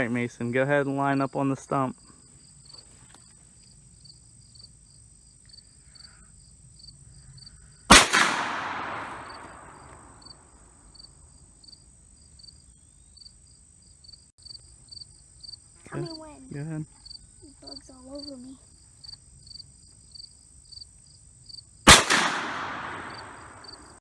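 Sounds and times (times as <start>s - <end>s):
crickets chirping: 0.0s - 24.0s
shotgun shot: 7.9s - 10.1s, 21.9s - 23.9s.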